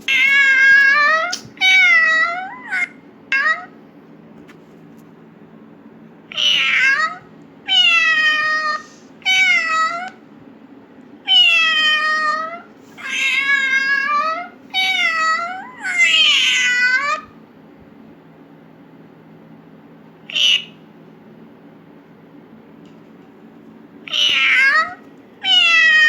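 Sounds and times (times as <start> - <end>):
cat meowing: 0.0 - 3.8, 6.3 - 10.2, 11.3 - 17.4, 20.3 - 20.8, 24.1 - 26.0.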